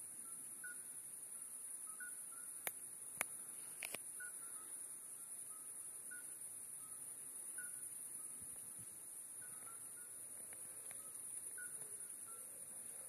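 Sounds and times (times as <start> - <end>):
crickets trilling: 0.0 - 13.0
soft piping notes: 1.9 - 13.0
faint clicks: 10.4 - 12.4.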